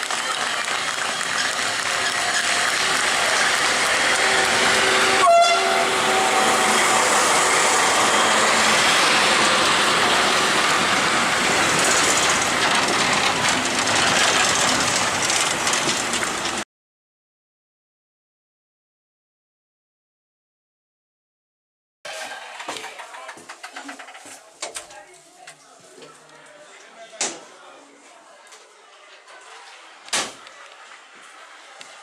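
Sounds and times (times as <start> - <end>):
train running on rails: 0.0 - 16.6, 22.1 - 25.5
train horn blast: 3.7 - 8.4.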